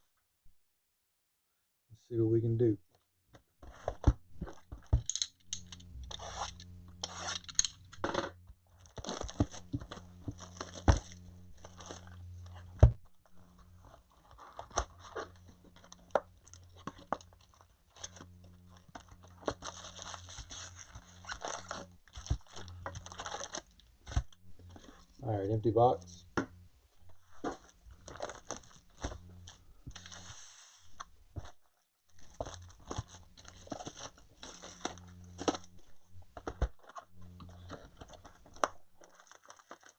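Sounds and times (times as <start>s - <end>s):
plastic wrap tearing: 5.0s - 8.0s, 8.7s - 12.7s, 13.3s - 25.2s, 27.4s - 30.3s, 32.1s - 36.0s, 36.7s - 39.9s
foil packs crinkling: 8.7s - 25.2s, 27.2s - 39.9s.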